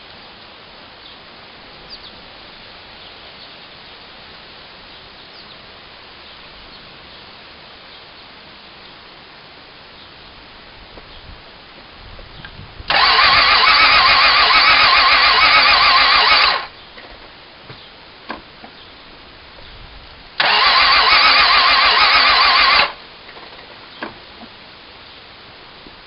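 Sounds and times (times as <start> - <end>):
starter motor cranking engine: 12.9 - 16.7, 20.4 - 23.5.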